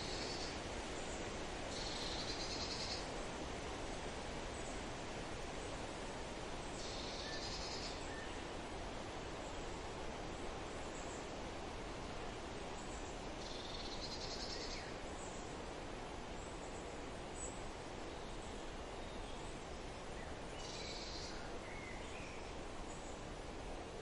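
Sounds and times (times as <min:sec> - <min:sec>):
wind through trees: 0:00.0 - 0:24.0
faint bird chirps: 0:01.7 - 0:03.1.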